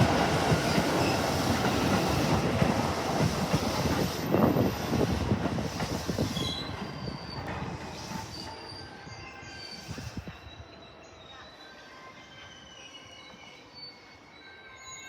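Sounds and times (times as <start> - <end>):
train wheels clattering: 0.0 - 8.6
high wheel squeals: 5.9 - 15.0.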